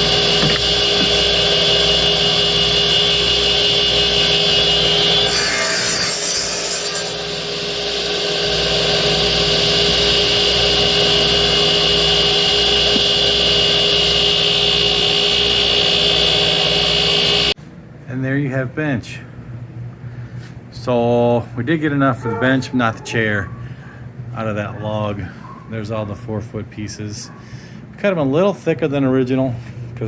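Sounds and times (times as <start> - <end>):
band saw cutting wood: 0.0 - 17.6.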